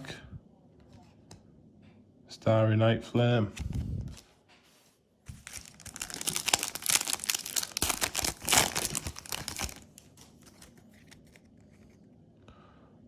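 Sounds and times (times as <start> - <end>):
foil wrapper tearing and crinkling: 5.3 - 11.3.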